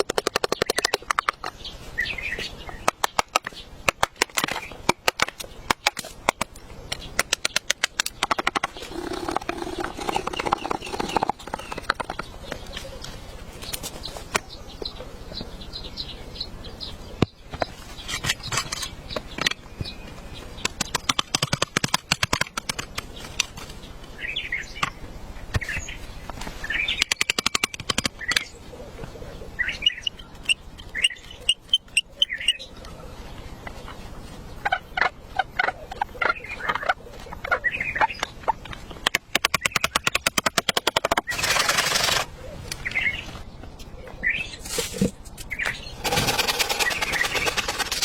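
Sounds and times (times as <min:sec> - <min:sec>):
short high chirping calls: 0:29.7 - 0:32.7.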